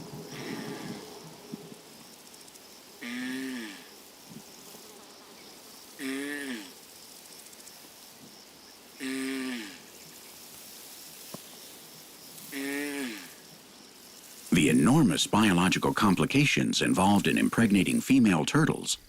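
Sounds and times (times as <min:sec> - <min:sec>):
faint insect buzz: 0:00.0 - 0:15.2.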